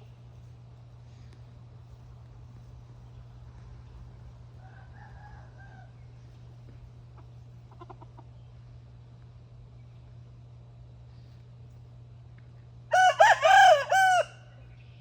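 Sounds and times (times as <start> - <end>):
steady low hum: 0.0 - 15.0
faint rooster crow: 4.4 - 6.3, 12.9 - 14.7
chickens clucking: 6.7 - 8.6.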